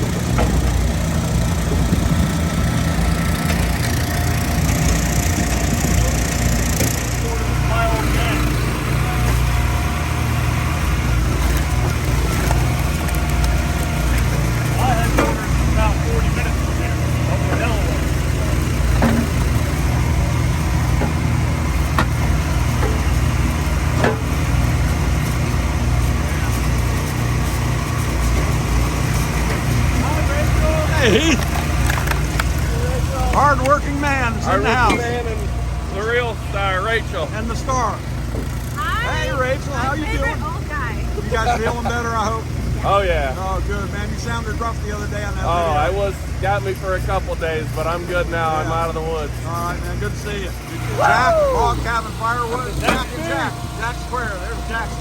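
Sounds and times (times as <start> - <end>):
log splitter engine running: 0.0 - 55.0
wood cracking and splintering: 8.9 - 15.8.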